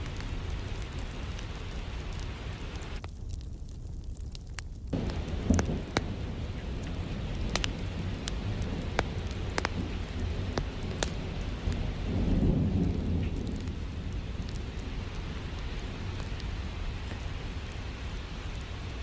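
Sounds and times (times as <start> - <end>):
crackling fire pops: 0.0 - 19.0
steady rain: 0.0 - 19.0
low thunder rumble: 4.9 - 19.0.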